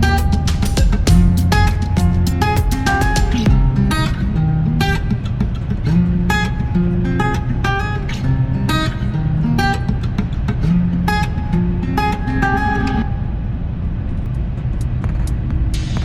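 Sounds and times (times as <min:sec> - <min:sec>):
steady low rumble: 0:00.0 - 0:07.6, 0:12.5 - 0:16.0
strummed acoustic guitar: 0:00.0 - 0:13.2.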